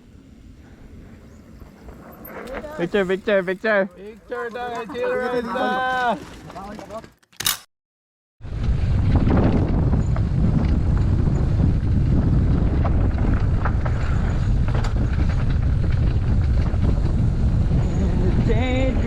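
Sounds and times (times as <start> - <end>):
wind rumbling on microphone: 8.4 - 19.0.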